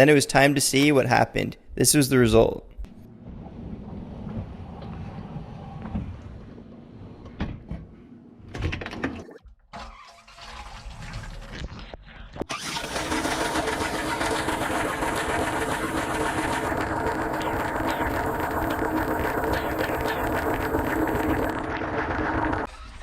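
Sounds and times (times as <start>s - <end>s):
dishwasher hum: 3.1s - 11.2s, 12.5s - 22.7s
dishwasher water spray rushing: 12.5s - 22.7s
dishwasher low rumble: 13.4s - 22.7s.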